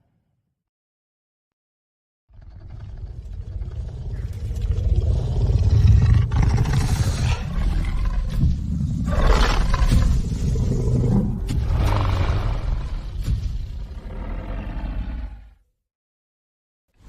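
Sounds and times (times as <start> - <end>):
dinosaur roar: 2.3 - 13.2, 13.8 - 15.6.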